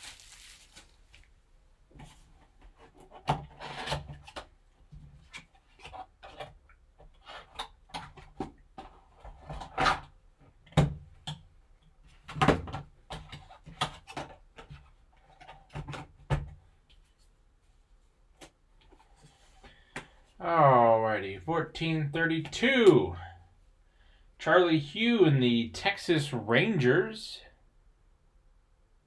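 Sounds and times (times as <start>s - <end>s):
cardboard and wrapping scraping: 0.0s - 1.3s.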